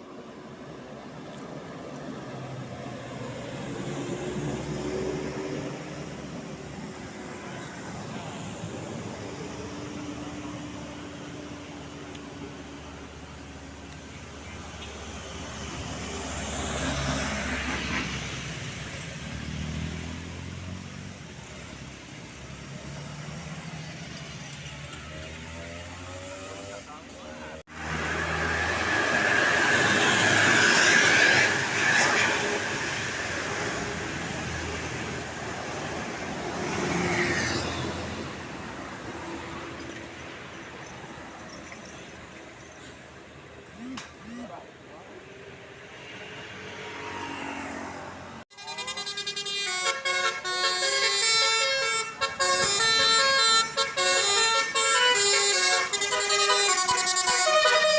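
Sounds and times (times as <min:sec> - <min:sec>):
vehicle passing by: 0:15.0 - 0:39.1, 0:45.8 - 0:48.4.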